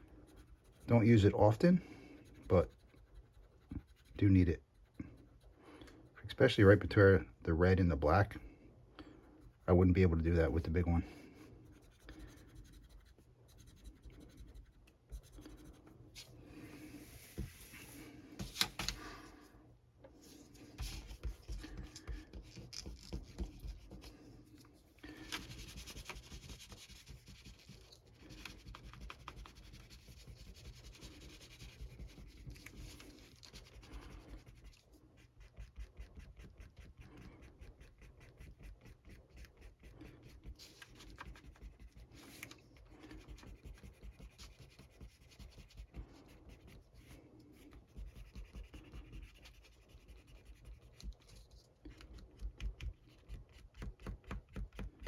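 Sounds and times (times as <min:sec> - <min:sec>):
eraser scrubbing on paper: 0:25.2 - 0:51.4.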